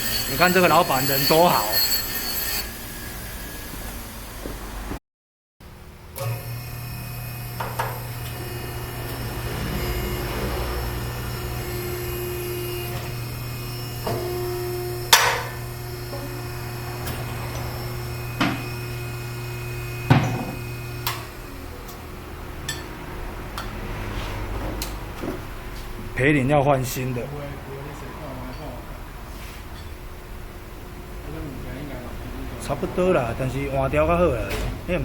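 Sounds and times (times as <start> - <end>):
machine hum: 5.9 - 23.5.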